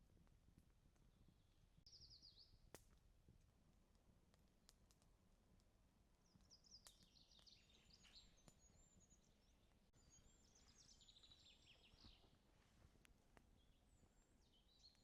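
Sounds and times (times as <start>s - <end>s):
songbird twittering: 6.4s - 12.2s.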